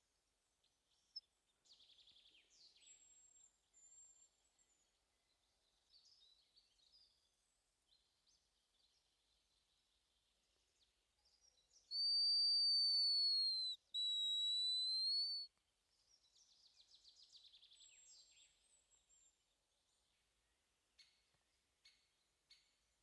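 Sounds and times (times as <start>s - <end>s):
high thin bird whistles: 11.9s - 15.5s.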